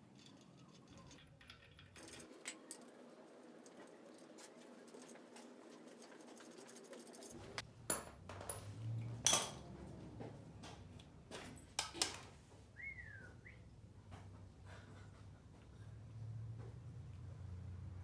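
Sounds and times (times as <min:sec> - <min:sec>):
metal parts and tools clinking: 0:00.0 - 0:03.0.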